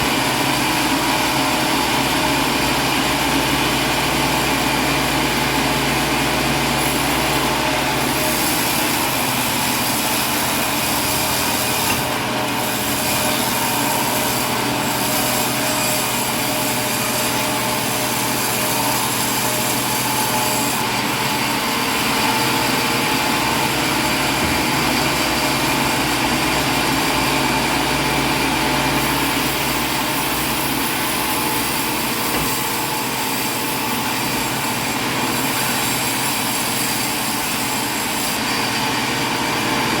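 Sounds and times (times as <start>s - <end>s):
machine droning: 0.0s - 40.0s.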